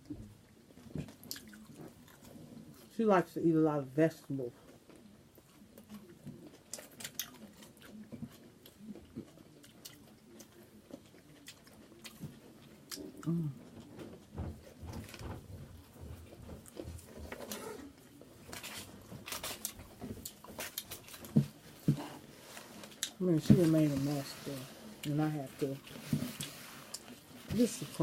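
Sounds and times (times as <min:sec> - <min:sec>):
chewing and lip smacking: 0:00.4 - 0:02.9, 0:04.8 - 0:14.3.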